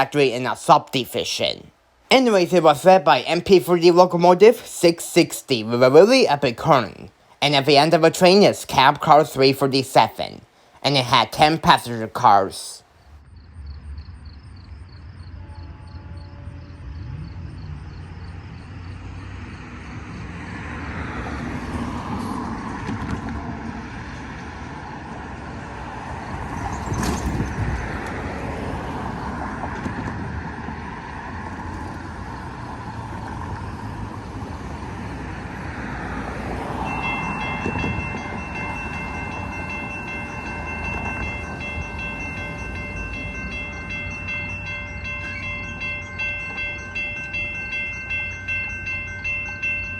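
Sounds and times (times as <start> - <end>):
locomotive engine and rails rumbling: 0.0 - 49.9
train horn: 15.3 - 17.5
steady multi-pitched tone: 36.4 - 49.9.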